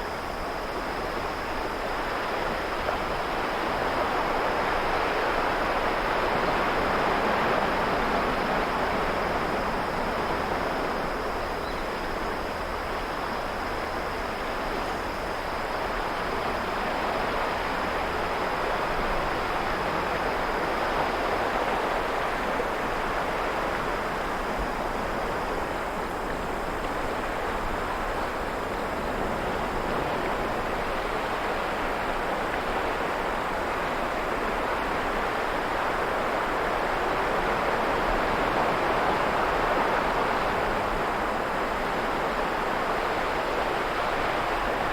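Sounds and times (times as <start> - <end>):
high insect trill: 5.6 - 21.6.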